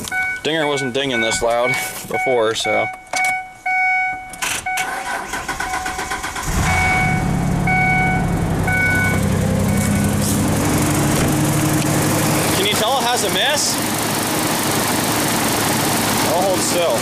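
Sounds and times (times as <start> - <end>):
warning chime dinging: 0.1 - 5.0, 6.5 - 10.3
engine cranking: 4.4 - 7.4
engine idling with misfire: 4.4 - 17.0.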